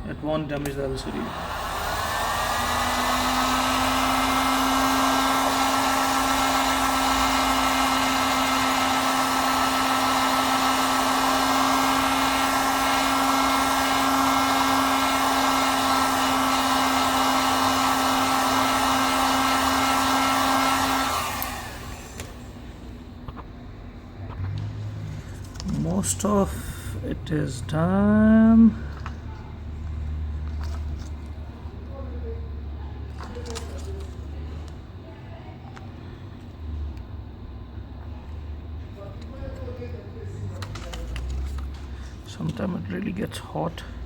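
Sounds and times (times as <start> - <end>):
hot-air blower whining: 0.0 - 23.4, 24.4 - 29.4.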